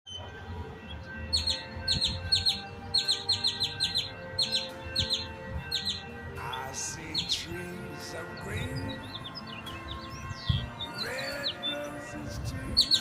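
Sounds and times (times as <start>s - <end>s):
songbird scolding chirps: 1.3s - 7.4s.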